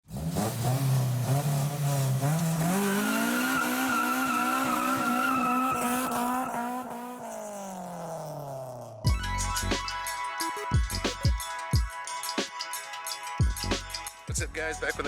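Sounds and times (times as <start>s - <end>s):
car engine revving: 0.0s - 9.9s.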